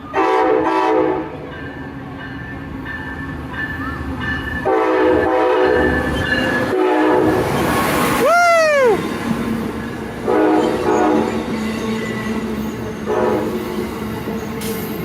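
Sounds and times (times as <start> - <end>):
moving train rumble: 0.0 - 15.0
train air horn blasts: 0.1 - 1.4, 4.6 - 6.0, 6.7 - 7.5, 10.2 - 11.5, 13.0 - 13.7.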